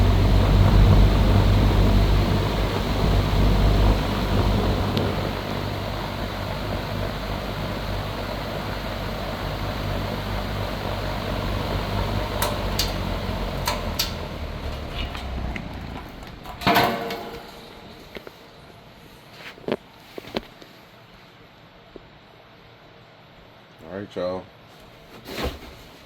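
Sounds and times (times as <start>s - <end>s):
box fan whirring: 0.0s - 26.0s
loud clunk: 16.3s - 18.4s.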